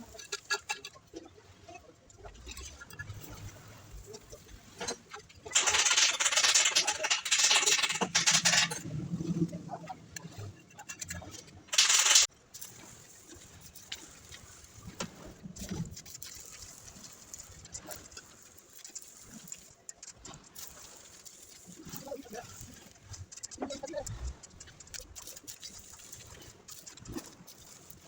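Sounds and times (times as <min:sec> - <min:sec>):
faint clicks and knocks: 0:00.0 - 0:28.0.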